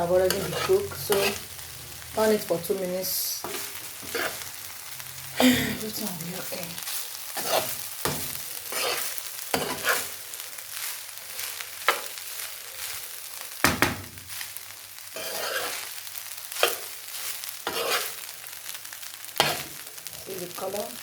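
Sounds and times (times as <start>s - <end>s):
rice sizzling in a pot: 0.0s - 21.0s
utensil scraping a pot: 0.2s - 1.5s, 3.4s - 4.4s, 7.4s - 7.8s, 8.7s - 10.1s, 15.2s - 15.9s, 17.6s - 18.2s.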